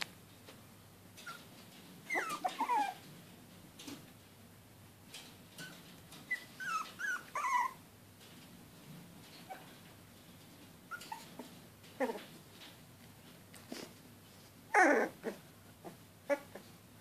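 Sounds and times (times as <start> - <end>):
puppies whimpering: 2.1 - 3.0, 6.3 - 7.8, 10.9 - 11.4, 14.7 - 15.4.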